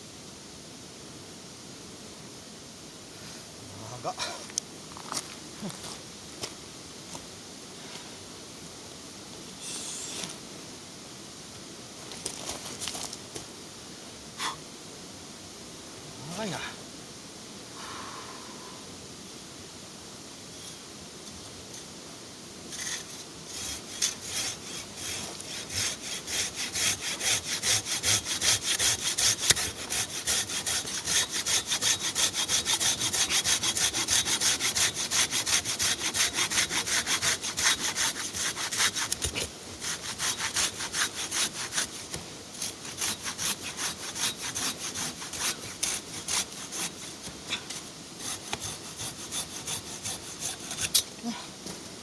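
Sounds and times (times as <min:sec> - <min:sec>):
hand saw cutting a log: 0:22.7 - 0:51.1.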